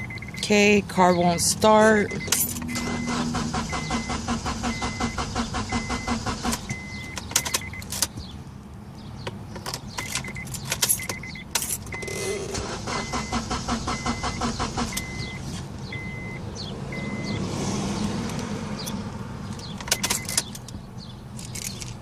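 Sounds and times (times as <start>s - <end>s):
dashboard warning chime beeping: 0.0s - 8.0s, 10.0s - 17.4s, 19.8s - 20.4s
car starter clicking rapidly: 2.6s - 8.0s, 11.9s - 15.4s.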